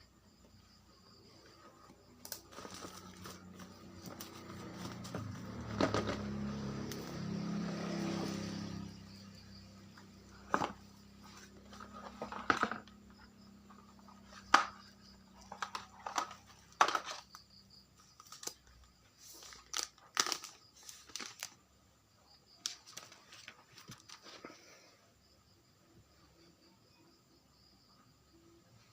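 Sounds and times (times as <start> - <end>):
packaging crinkling and clicking: 19.4 - 21.6.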